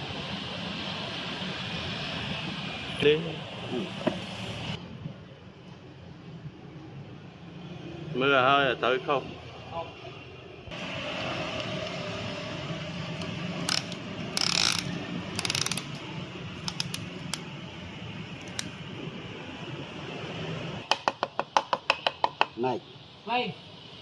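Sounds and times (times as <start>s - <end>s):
ratchet wrench clicking: 13.6s - 16.0s, 16.6s - 17.4s.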